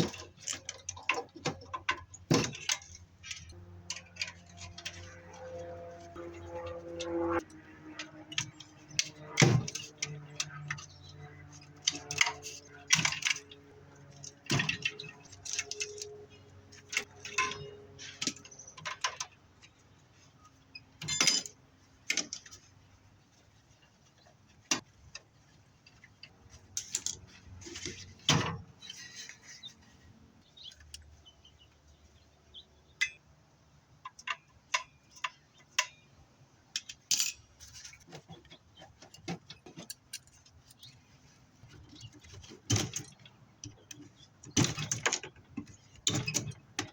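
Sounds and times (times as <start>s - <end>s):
metal parts clinking and rattling: 0.0s - 19.8s, 20.7s - 22.7s, 25.8s - 29.7s, 36.7s - 38.2s, 41.9s - 46.9s.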